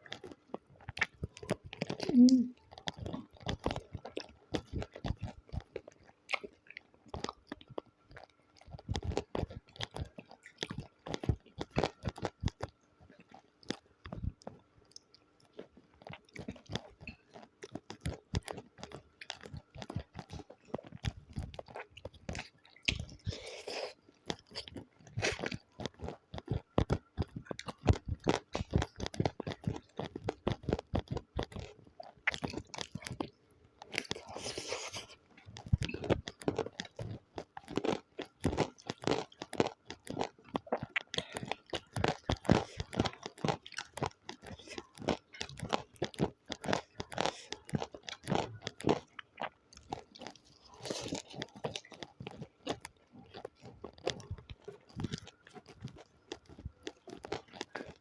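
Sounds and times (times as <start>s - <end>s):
chewing and crunching food: 0.0s - 58.0s
wet mouth clicks: 0.9s - 5.7s.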